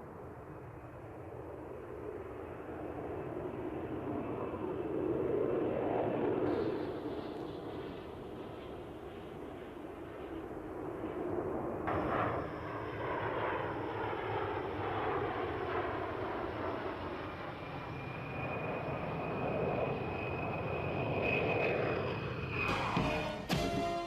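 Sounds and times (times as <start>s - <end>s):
jet engines rushing: 0.0s - 24.0s
high whine: 20.4s - 24.0s.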